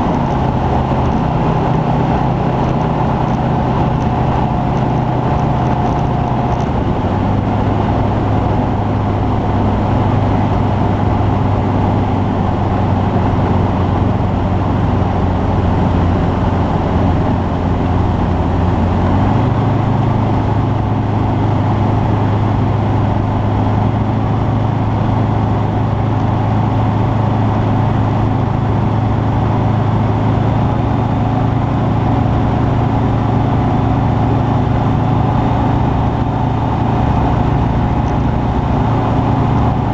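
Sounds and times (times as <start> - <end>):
aircraft engine running: 0.0 - 39.9.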